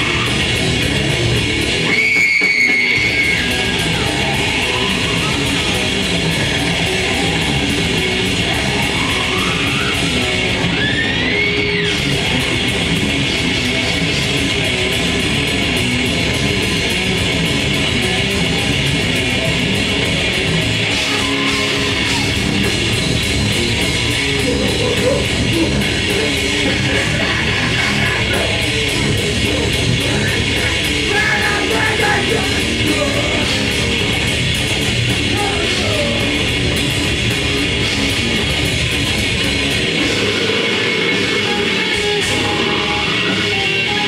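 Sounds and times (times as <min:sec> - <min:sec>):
distorted electric guitars: 0:00.0 - 0:44.0
fast drums: 0:00.0 - 0:44.0
shouted vocals: 0:01.8 - 0:12.1, 0:20.8 - 0:22.7, 0:24.1 - 0:34.3, 0:35.1 - 0:36.8.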